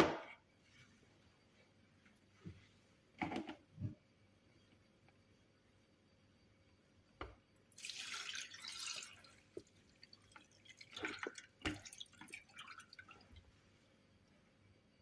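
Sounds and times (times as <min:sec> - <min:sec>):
liquid pouring: 0:07.7 - 0:13.4.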